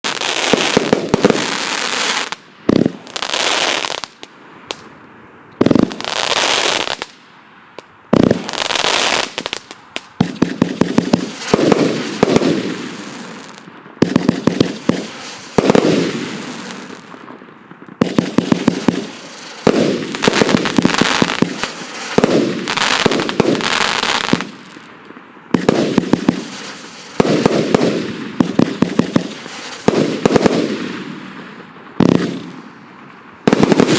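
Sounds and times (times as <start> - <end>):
firework shots firing: 0.0 - 3.8, 8.2 - 17.1, 18.0 - 24.8, 25.5 - 32.6, 33.5 - 33.9
crackling of bursting stars: 8.2 - 33.9.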